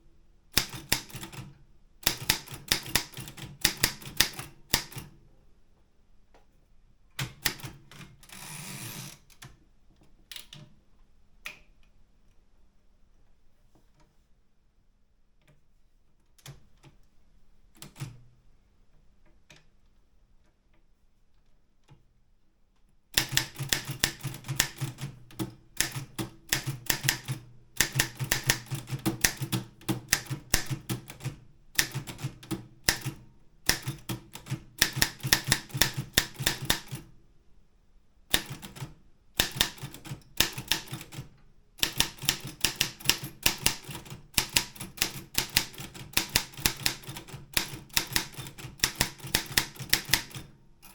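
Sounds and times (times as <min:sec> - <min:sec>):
manual typewriter typing: 0:00.6 - 0:05.1, 0:23.2 - 0:37.1, 0:38.3 - 0:50.9.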